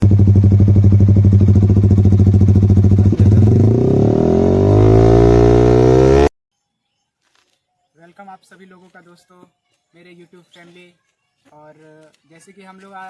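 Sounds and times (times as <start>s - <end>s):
motorcycle engine idling and revving: 0.0s - 6.3s.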